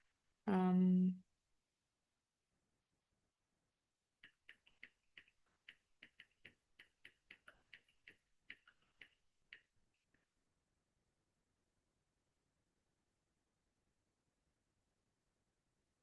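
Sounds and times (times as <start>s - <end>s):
faint keyboard typing: 4.2s - 10.3s.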